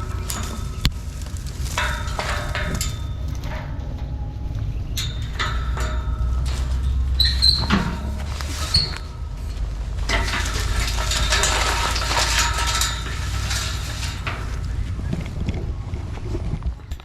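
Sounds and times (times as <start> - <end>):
rattling: 0.0 - 16.0
truck rumbling over rough ground: 0.0 - 17.0
short high squeaks: 7.2 - 9.3.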